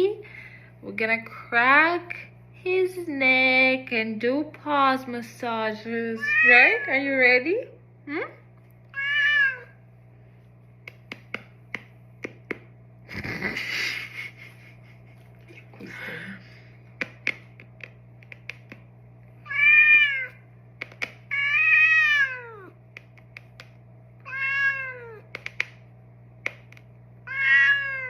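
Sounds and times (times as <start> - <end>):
cat meowing: 6.2 - 7.0, 8.9 - 9.8, 19.4 - 20.4, 21.3 - 22.7, 24.2 - 25.3, 27.2 - 28.0
sharp clicks: 25.3 - 25.8.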